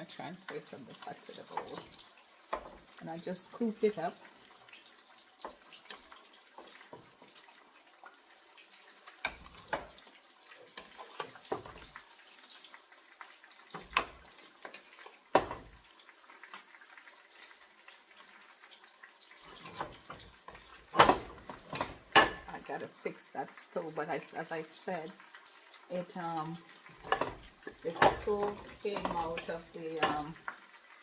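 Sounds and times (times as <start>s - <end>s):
metal spoon scraping and knocking pot: 27.0s - 30.3s.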